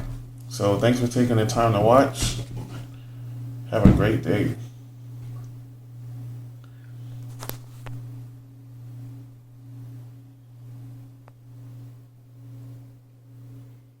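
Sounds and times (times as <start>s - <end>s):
pulsing low hum: 0.0s - 7.2s.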